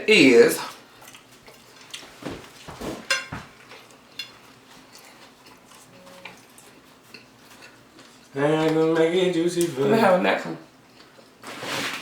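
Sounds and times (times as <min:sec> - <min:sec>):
soft knocks of eating: 0:00.7 - 0:09.8
cutlery clinking against plates: 0:03.0 - 0:05.1.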